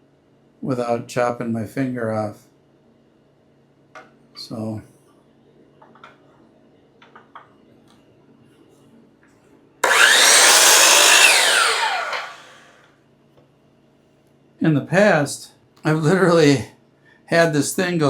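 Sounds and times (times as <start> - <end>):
table saw motor: 9.8 - 12.8.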